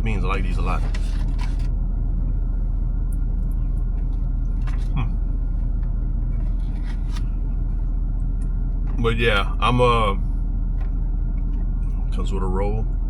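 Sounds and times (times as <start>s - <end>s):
vehicle engine idling: 0.0s - 13.0s.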